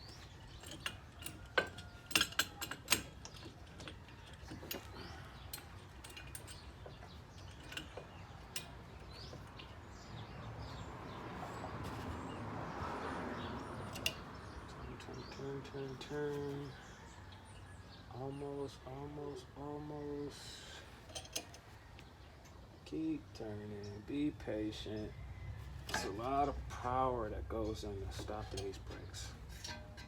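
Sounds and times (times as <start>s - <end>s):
metal clamp clinking: 0.0s - 10.8s, 13.6s - 14.6s, 21.0s - 21.6s, 25.8s - 26.3s, 28.1s - 30.0s
birds chirping: 0.0s - 30.0s.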